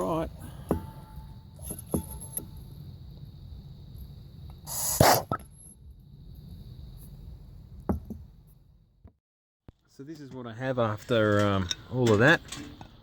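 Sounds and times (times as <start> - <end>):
low steady rumble: 0.0 - 4.6, 5.5 - 9.0
hissing burst of air: 4.6 - 5.4.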